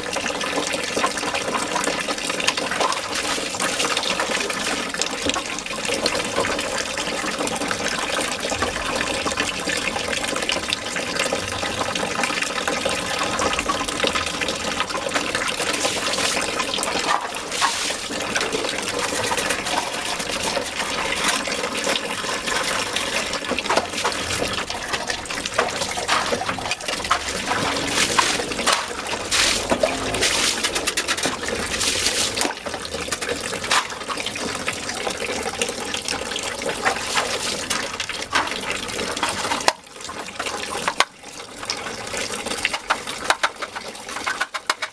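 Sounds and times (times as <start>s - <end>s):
running water splashing: 0.0s - 7.5s, 12.7s - 44.9s
small knocks: 22.4s - 31.4s, 42.7s - 44.9s.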